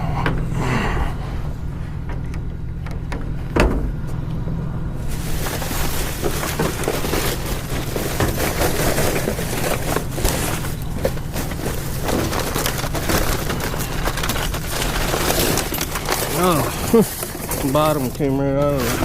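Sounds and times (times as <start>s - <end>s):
idling engine hum: 0.0s - 19.0s
thump: 3.6s - 3.9s
rummaging trash in dumpster: 4.9s - 19.0s.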